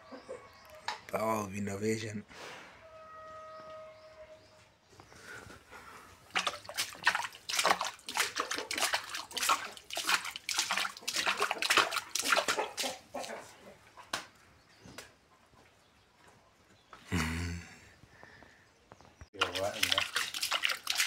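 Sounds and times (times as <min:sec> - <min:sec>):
water sloshing and splashing: 0:06.2 - 0:13.4, 0:19.4 - 0:21.0.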